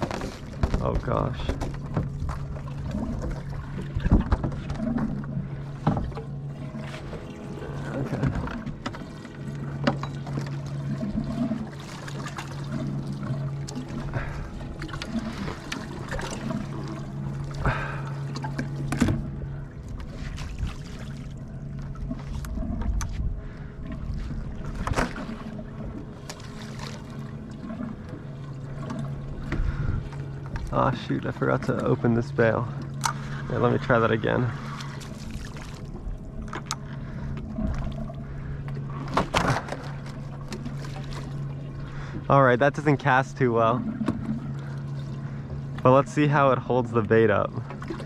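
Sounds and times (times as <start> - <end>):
knocks and clicks of gear: 0.0 - 2.4, 3.9 - 6.4, 9.8 - 10.6, 18.3 - 19.4, 32.8 - 33.2
boat motor hum: 0.0 - 48.0
water trickling and sloshing: 0.0 - 48.0.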